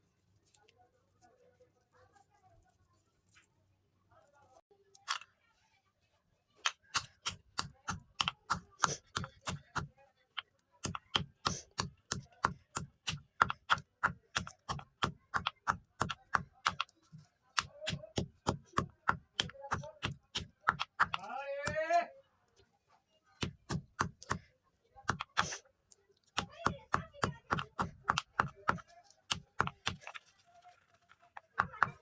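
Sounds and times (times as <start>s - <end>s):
chalk crunching: 26.3s - 32.0s.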